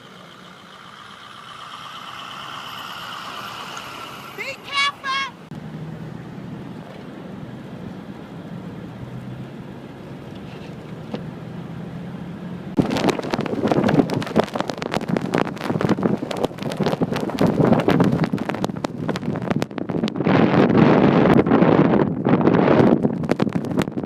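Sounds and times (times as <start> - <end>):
vehicle engine running: 0.0 - 20.0
gusting wind buffeting microphone: 12.7 - 24.0.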